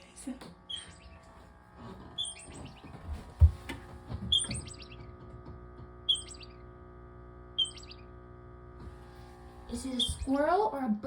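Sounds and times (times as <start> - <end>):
small animal squeaking chirps: 0.7 - 1.2, 2.2 - 2.9, 4.3 - 5.0, 6.1 - 6.6, 7.6 - 8.1, 9.7 - 10.4.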